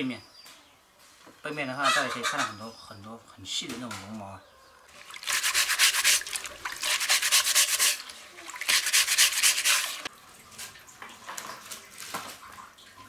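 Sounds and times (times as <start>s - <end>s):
brush scrubbing leaves: 5.0s - 10.1s.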